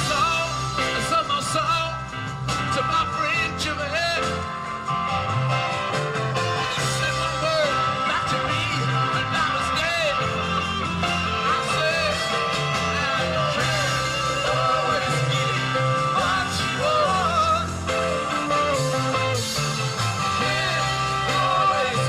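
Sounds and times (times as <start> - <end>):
bending lead guitar line: 0.0 - 22.0
live rock band playing: 0.0 - 22.0
person singing: 11.0 - 19.2, 20.2 - 22.0.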